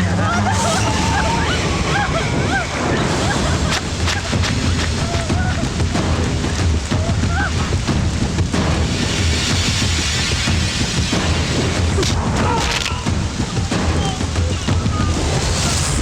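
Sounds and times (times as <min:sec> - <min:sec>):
dramatic background score: 0:00.0 - 0:16.0
hissing rush: 0:00.0 - 0:16.0
steady low rumble: 0:00.0 - 0:16.0
heavy booming hits: 0:00.8 - 0:16.0.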